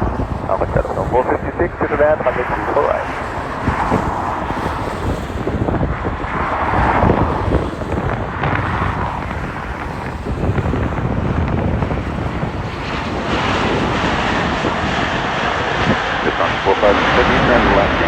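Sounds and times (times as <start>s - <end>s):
jet airliner engine noise: 0.0s - 18.0s
wind buffeting microphone: 0.0s - 18.0s.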